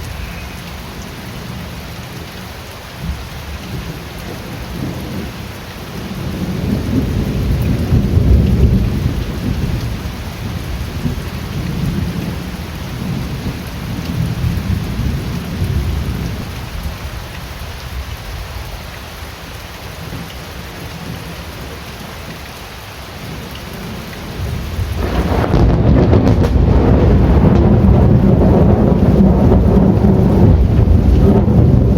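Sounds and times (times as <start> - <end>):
steady rain falling: 0.0 - 31.9
rolling thunder rumble: 6.0 - 17.0, 23.8 - 31.9.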